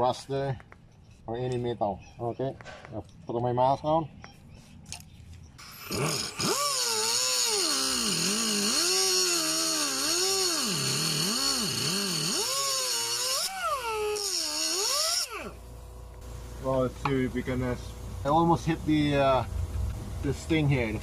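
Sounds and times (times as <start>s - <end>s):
power cutter grinding metal: 5.6s - 15.7s.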